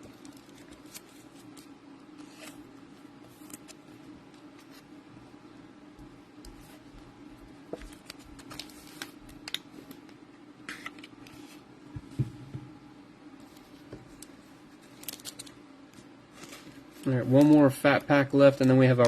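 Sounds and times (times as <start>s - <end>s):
steady low hum: 0.0s - 19.0s
cards rustling and tapping: 7.7s - 11.4s.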